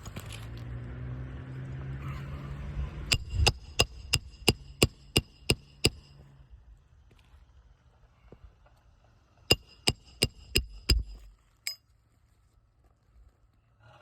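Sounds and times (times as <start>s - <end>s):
hammer striking metal: 3.1s - 6.2s, 9.5s - 11.8s.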